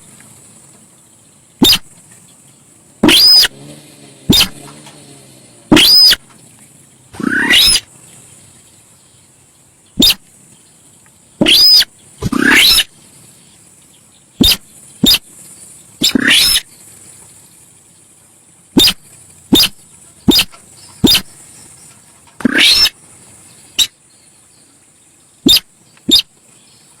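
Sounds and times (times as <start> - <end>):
bird calling with harsh squeals: 1.6 - 2.0, 3.0 - 3.6, 4.3 - 4.7, 5.7 - 6.4, 7.2 - 7.9, 10.0 - 10.3, 11.4 - 13.0, 14.4 - 15.3, 16.0 - 16.7, 18.8 - 21.4, 22.4 - 23.0, 23.7 - 24.0, 25.4 - 26.4.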